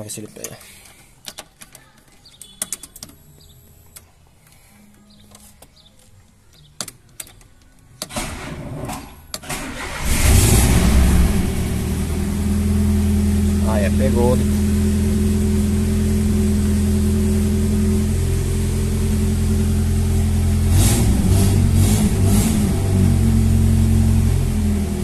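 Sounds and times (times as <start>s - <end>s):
car starter cranking: 8.1s - 11.4s
car engine revving and idling: 9.8s - 25.0s.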